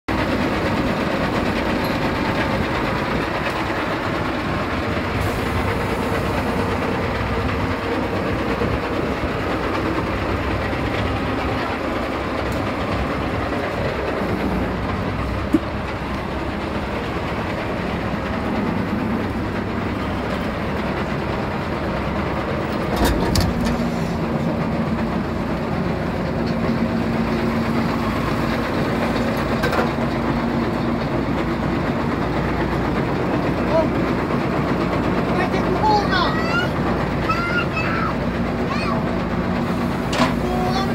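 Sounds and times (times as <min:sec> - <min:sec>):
machine running steadily: 0:00.1 - 0:40.9.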